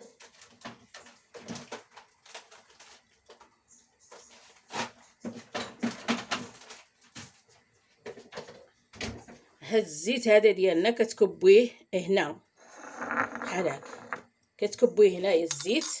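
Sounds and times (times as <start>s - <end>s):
kitchen utensils knocking and clinking: 15.4s - 16.0s.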